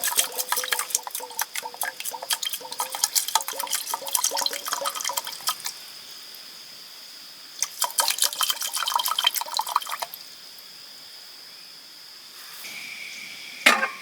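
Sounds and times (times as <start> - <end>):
water splashing and dripping: 0.0 - 5.8, 7.6 - 10.2.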